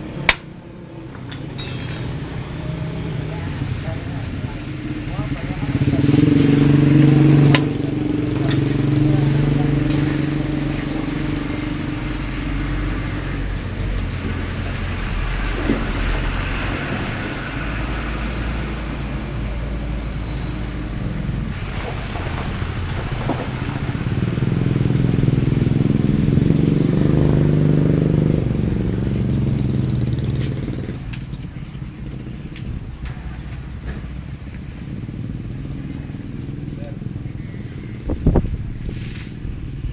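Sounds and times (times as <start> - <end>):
motorcycle engine running: 3.2 - 12.0, 22.4 - 32.8, 34.1 - 38.8.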